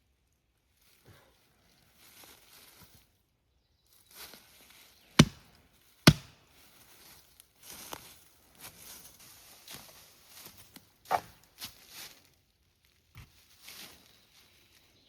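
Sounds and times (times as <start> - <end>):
sharp impacts: 6.1 - 6.3.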